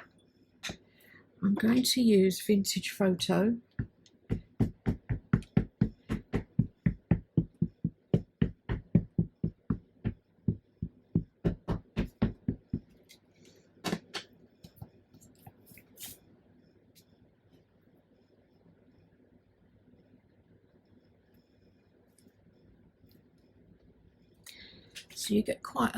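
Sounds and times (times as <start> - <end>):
ink pad tapping on stamp: 3.8 - 12.9.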